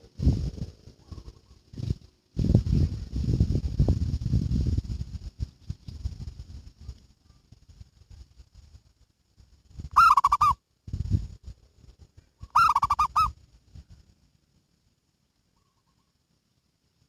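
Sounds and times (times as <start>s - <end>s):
dove rolling coos: 10.0s - 10.6s, 12.5s - 13.3s.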